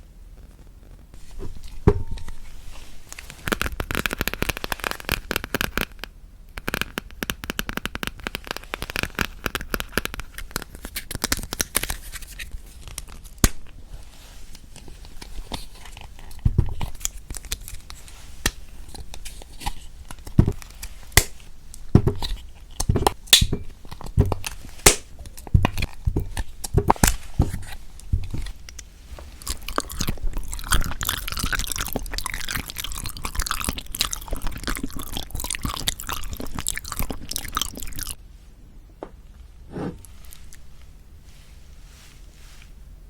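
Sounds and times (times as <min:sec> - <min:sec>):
soft thumps: 0:01.2 - 0:03.1, 0:38.9 - 0:40.0
plastic wrapper tearing and crumpling: 0:03.1 - 0:13.7.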